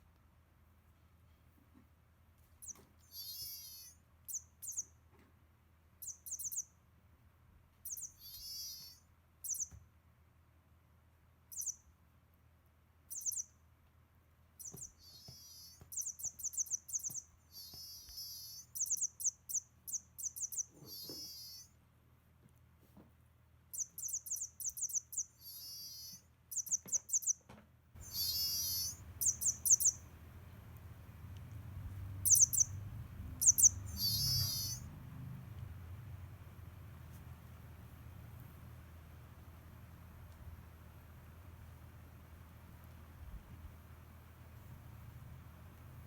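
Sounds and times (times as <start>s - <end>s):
toy mouse electronic squeaks: 2.6s - 5.0s, 6.0s - 6.7s, 7.9s - 9.8s, 11.5s - 11.8s, 13.1s - 13.6s, 14.6s - 21.7s, 23.8s - 27.4s, 28.0s - 30.0s, 32.2s - 32.8s, 33.4s - 34.8s.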